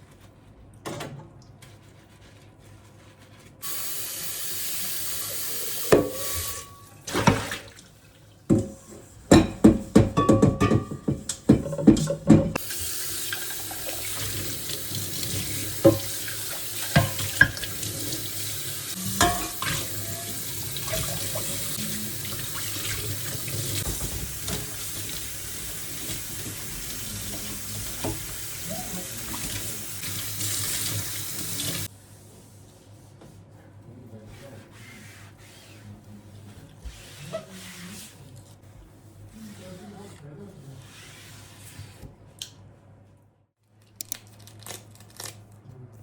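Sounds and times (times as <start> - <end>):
tap running into sink: 22.5 - 28.5.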